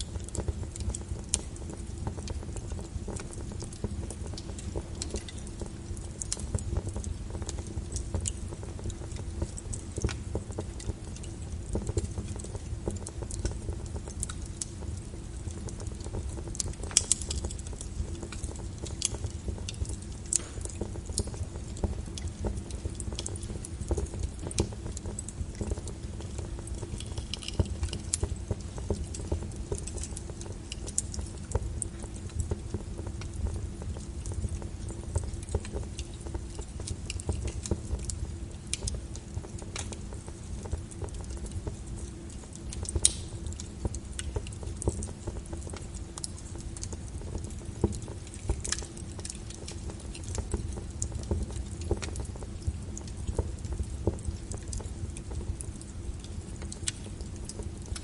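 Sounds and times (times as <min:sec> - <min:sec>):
low rumble of flames: 0:00.0 - 0:58.0
wood fire crackling: 0:00.0 - 0:58.0.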